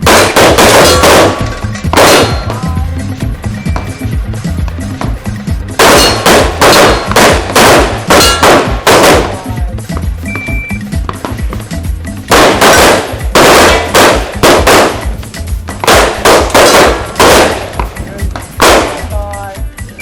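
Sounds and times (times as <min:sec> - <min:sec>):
pistol shots: 0:00.0 - 0:02.6, 0:05.7 - 0:09.6, 0:12.3 - 0:15.2, 0:15.8 - 0:19.1.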